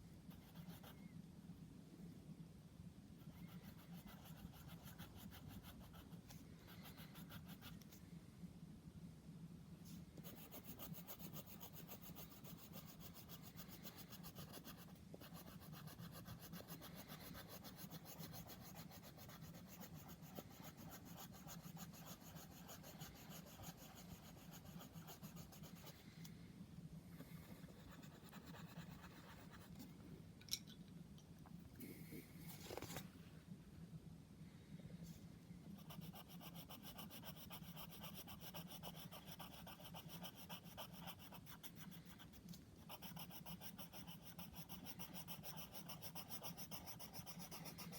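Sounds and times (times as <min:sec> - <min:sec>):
colouring tool scratching paper: 0:10.3 - 0:25.9, 0:35.8 - 0:47.9.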